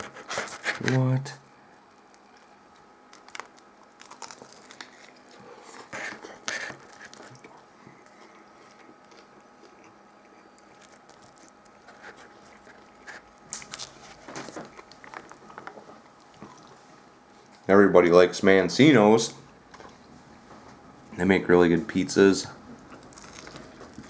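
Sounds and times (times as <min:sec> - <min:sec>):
crunching of crusty bread: 0:01.9 - 0:16.8, 0:22.7 - 0:24.0
paper wrapper crinkling: 0:03.1 - 0:05.2, 0:10.8 - 0:15.8, 0:23.0 - 0:24.0.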